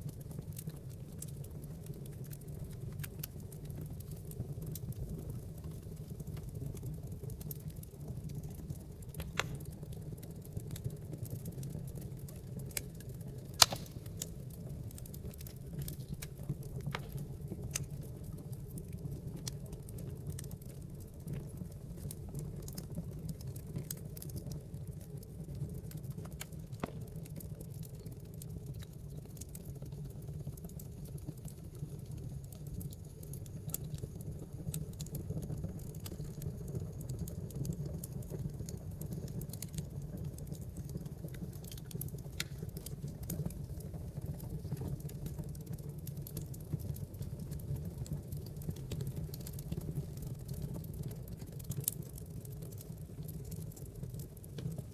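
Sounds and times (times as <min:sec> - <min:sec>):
wood fire crackling: 0:00.0 - 0:54.9
loud sharp fire pop: 0:13.6 - 0:14.2.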